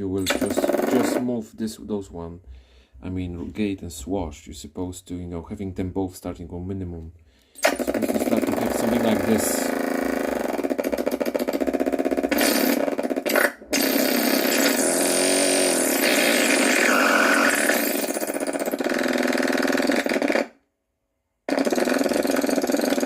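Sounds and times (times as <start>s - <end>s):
harsh buzzing electronic noise: 7.6s - 20.6s, 21.5s - 23.0s.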